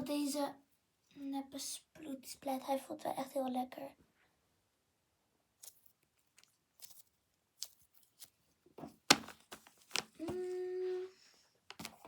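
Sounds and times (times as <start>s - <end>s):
toys and packaging rustling: 5.6s - 12.0s
person humming: 10.2s - 11.2s.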